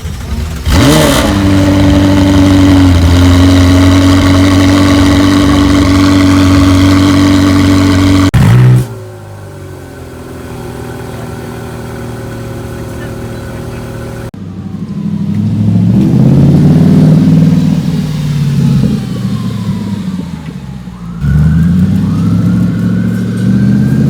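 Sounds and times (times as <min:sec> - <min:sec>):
sports car engine revving and idling: 0:00.0 - 0:24.0.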